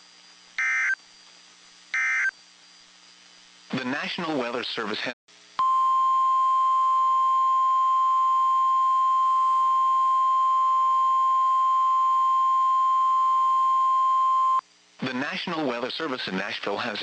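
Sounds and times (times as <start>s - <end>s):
steady warning beep: 5.6s - 14.6s.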